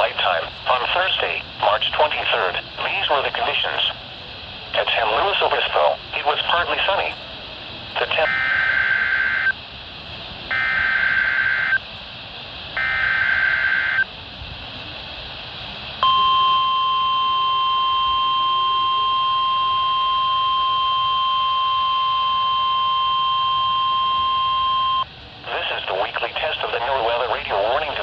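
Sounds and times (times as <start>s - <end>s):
radio hiss: 0.0s - 9.6s, 12.7s - 14.1s, 15.6s - 28.0s
steady warning alarm tone: 8.0s - 9.6s, 10.5s - 11.9s, 12.8s - 14.1s, 16.0s - 25.1s
warbling data bursts: 8.0s - 9.6s, 10.5s - 11.8s, 12.8s - 14.1s.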